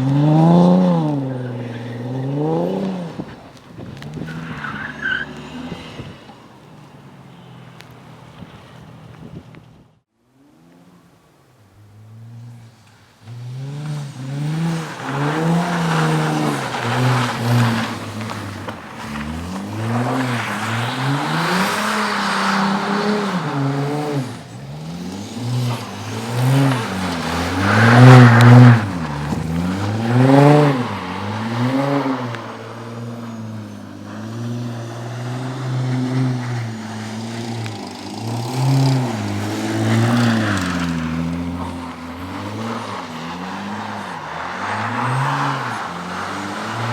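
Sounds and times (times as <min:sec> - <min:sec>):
car engine revving: 0:10.4 - 0:46.9.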